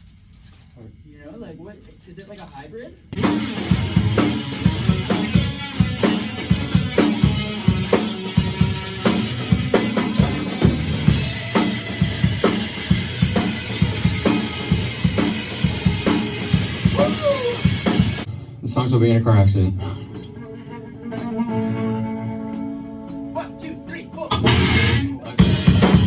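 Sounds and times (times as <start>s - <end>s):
kick and snare drums: 3.1s - 18.3s, 25.4s - 26.0s.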